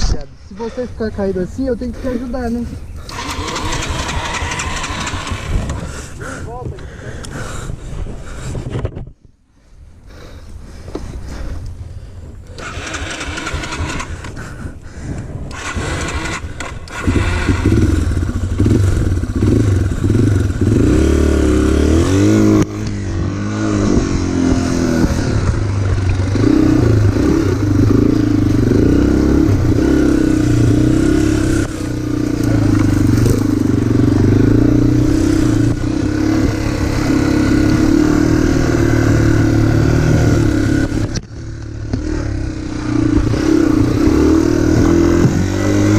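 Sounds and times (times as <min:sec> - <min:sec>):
motorcycle engine revving: 0:01.6 - 0:06.3, 0:12.5 - 0:14.5, 0:15.4 - 0:45.9
rough noise and knocks: 0:43.1 - 0:45.6.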